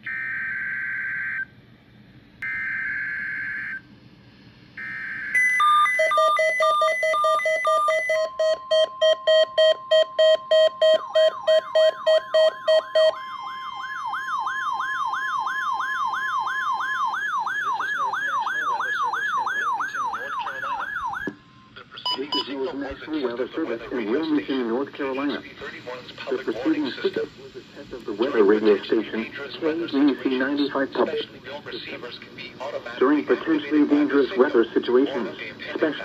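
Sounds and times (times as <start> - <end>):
warbling siren tone: 2.4 - 3.8, 4.8 - 21.4
steady alert tone: 4.8 - 15.3
stepped fast-pulsing beeps: 5.4 - 13.9.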